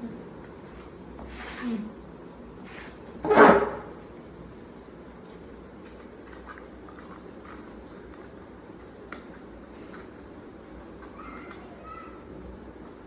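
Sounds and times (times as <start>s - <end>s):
short scrape: 1.3s - 1.8s, 2.6s - 3.8s.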